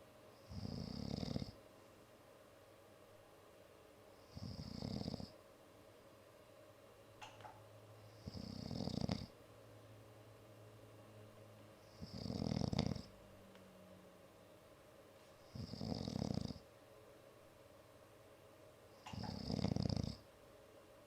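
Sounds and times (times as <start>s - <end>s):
woman snoring: 0.4s - 1.6s, 4.3s - 5.3s, 8.2s - 9.3s, 11.9s - 13.1s, 15.6s - 16.6s, 19.1s - 20.2s.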